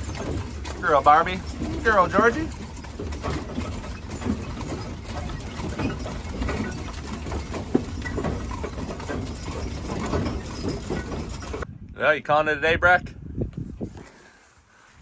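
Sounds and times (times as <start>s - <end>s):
hooves clopping: 0.0s - 11.7s
wagon and harness knocking: 0.0s - 11.7s
wagon wheels rumbling: 0.0s - 11.7s.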